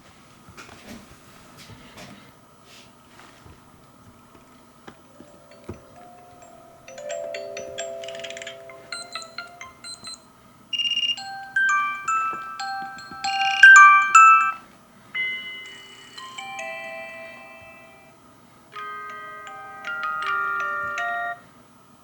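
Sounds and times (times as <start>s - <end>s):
phone alarm tones: 5.0s - 14.6s, 15.2s - 18.2s, 18.8s - 21.4s.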